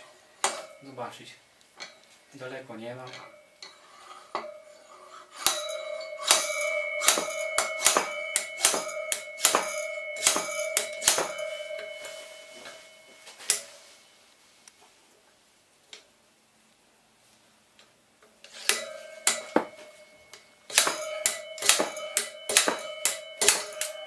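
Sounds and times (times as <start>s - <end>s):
hammer striking metal: 0.4s - 1.0s, 4.4s - 14.0s, 18.6s - 24.0s.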